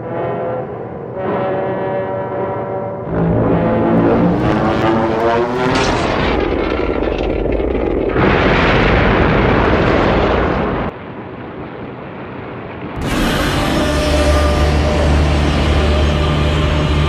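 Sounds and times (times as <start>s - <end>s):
rushing rumbling noise: 3.0s - 17.0s
monster roar: 13.0s - 17.0s.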